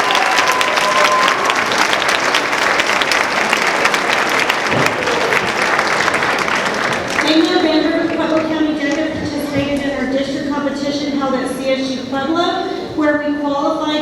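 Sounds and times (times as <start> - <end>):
audience applauding: 0.0 - 8.6.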